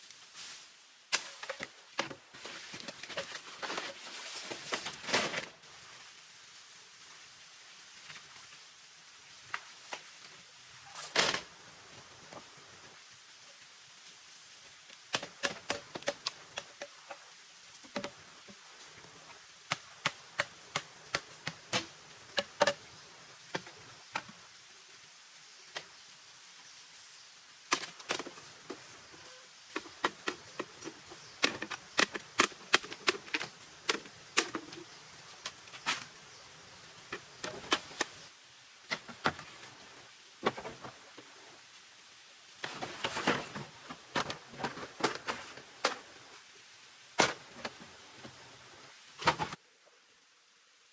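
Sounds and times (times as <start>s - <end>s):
scraping and rustling: 0.0s - 5.6s, 42.6s - 46.4s.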